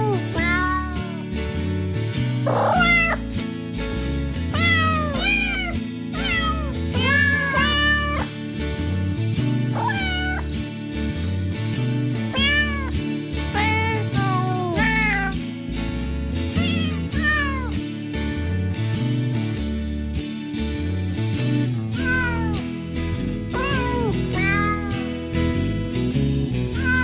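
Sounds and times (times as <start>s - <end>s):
cats meowing: 0.0s - 1.3s, 2.5s - 3.3s, 4.5s - 8.3s, 9.7s - 10.5s, 12.3s - 15.4s, 16.6s - 17.8s, 22.0s - 22.6s, 23.5s - 25.1s, 26.8s - 27.0s.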